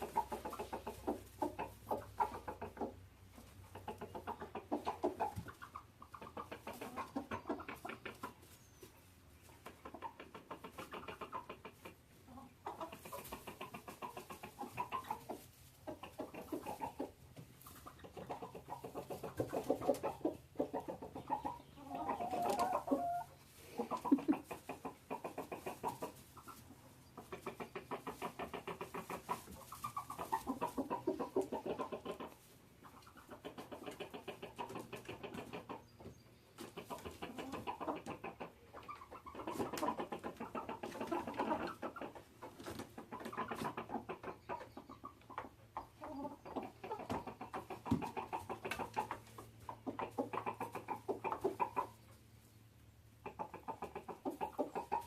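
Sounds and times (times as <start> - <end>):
chicken clucking and cackling: 0.0 - 55.0.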